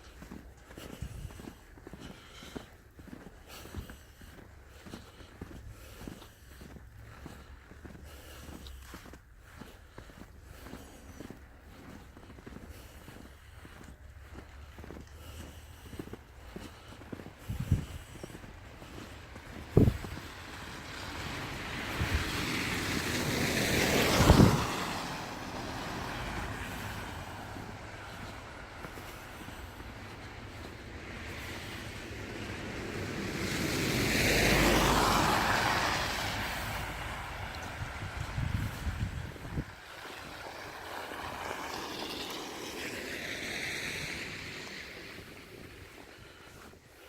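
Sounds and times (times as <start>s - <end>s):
vehicle tyre hiss on snow: 0.0s - 47.0s
wind buffeting microphone: 17.3s - 30.5s, 31.1s - 46.9s.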